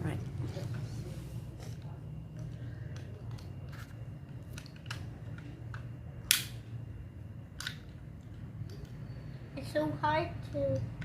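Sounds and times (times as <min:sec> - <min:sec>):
low steady hum: 0:00.0 - 0:11.0
loud sharp click: 0:06.3 - 0:06.6
plastic toy clicks and knocks: 0:07.6 - 0:08.0.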